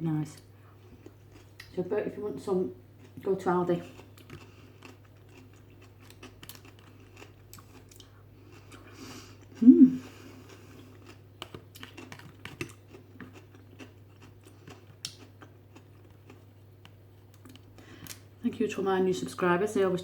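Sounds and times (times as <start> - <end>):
chewing and mouth noises: 0.9 - 1.8, 3.8 - 18.2.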